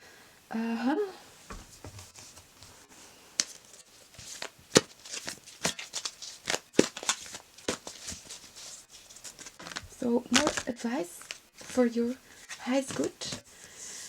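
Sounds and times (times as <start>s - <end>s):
cards shuffling: 3.4s - 13.7s.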